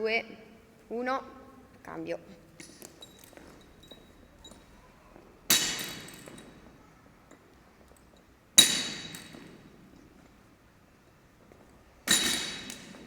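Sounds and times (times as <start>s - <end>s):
barbell plates clanging on floor: 5.5s - 6.6s, 8.6s - 9.7s, 12.0s - 13.0s.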